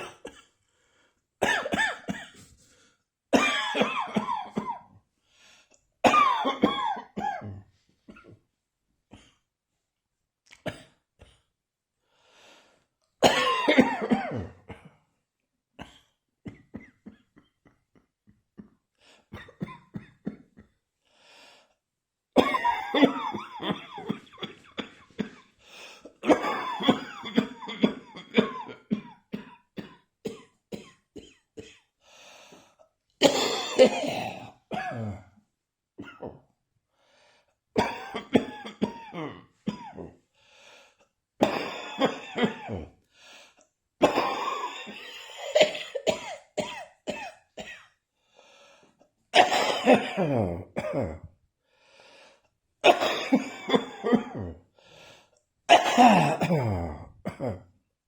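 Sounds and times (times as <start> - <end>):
person coughing: 0.0 - 0.5, 1.4 - 2.5, 3.4 - 4.9, 6.0 - 8.4, 13.2 - 15.0, 22.4 - 31.8, 33.2 - 35.3, 36.0 - 36.4, 37.8 - 40.2, 41.4 - 43.0, 44.0 - 47.9, 49.4 - 51.3, 52.8 - 54.6, 55.7 - 57.6
breathing: 0.6 - 1.2, 2.4 - 3.1, 5.2 - 5.8, 12.0 - 13.0, 18.9 - 19.3, 21.0 - 21.8, 25.5 - 26.2, 32.0 - 32.9, 36.9 - 37.6, 40.3 - 41.1, 43.0 - 43.7, 48.2 - 49.1, 51.6 - 52.5, 54.7 - 55.4.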